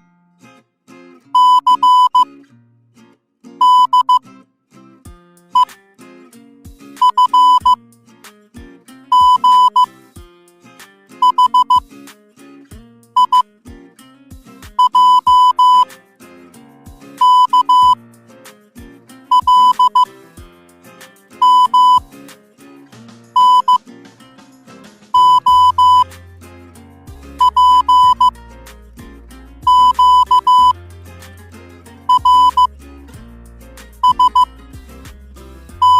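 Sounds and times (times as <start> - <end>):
morse code beeps: 1.4 - 2.3, 3.6 - 4.2, 7.0 - 7.8, 9.1 - 9.9, 11.2 - 11.8, 13.2 - 13.4, 14.8 - 15.9, 17.2 - 18.0, 19.3 - 20.1, 21.4 - 22.1, 23.4 - 23.8, 25.2 - 26.0, 27.4 - 28.3, 29.6 - 30.8, 32.1 - 32.7, 34.0 - 34.5
background music: 4.9 - 35.9.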